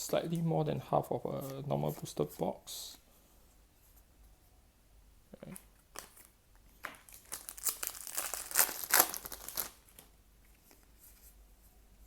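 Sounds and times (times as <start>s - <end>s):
foil pack tearing and crinkling: 7.1s - 9.8s.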